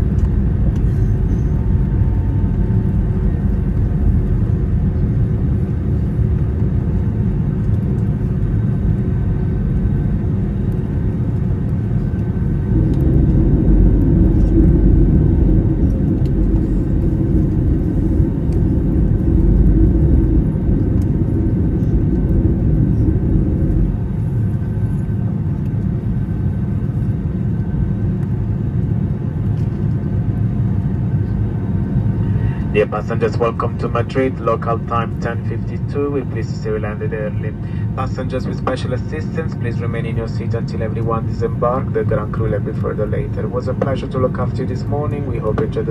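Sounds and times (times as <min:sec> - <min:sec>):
airplane cabin rumble: 0:00.0 - 0:45.9.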